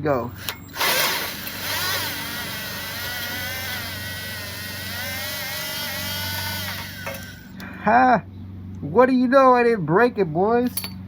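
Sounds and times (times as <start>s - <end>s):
power ratchet motor whining: 0.0s - 7.8s.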